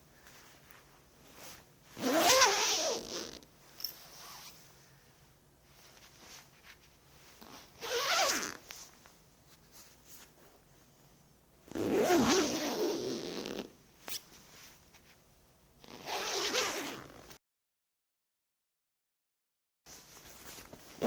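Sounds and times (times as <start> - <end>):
zipper being pulled: 1.3 - 4.6, 7.4 - 8.7, 11.7 - 14.2, 15.8 - 17.4.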